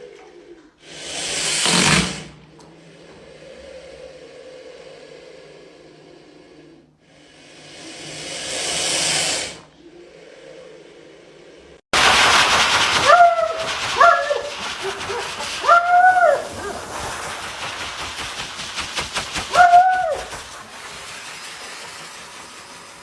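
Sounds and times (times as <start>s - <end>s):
loud steady hiss: 7.2s - 9.6s, 12.0s - 23.0s
dog howling: 13.0s - 16.9s, 19.5s - 20.4s.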